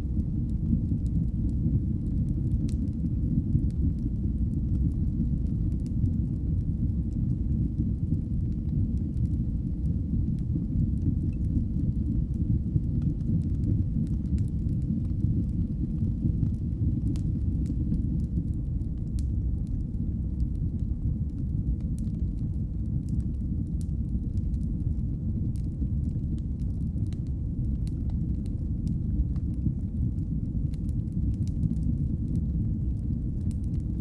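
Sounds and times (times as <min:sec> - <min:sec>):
fire crackles: 0:00.0 - 0:34.0
wood fire rumbling: 0:00.0 - 0:34.0.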